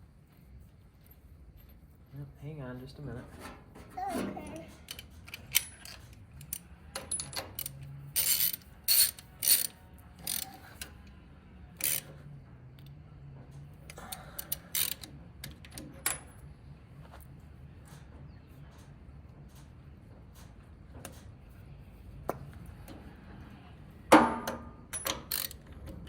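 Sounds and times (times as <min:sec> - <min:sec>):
short metallic clatters: 0:03.1 - 0:11.0
socket ratchet clicking: 0:07.5 - 0:10.9, 0:11.8 - 0:12.1, 0:14.2 - 0:15.1, 0:25.0 - 0:25.7.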